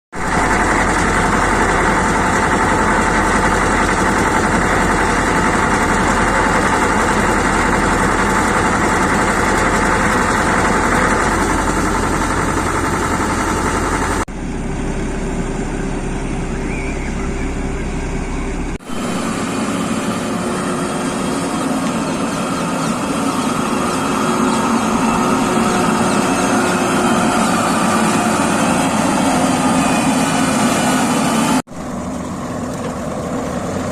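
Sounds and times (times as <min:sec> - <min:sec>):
heavy construction machinery running: 0:00.1 - 0:33.9.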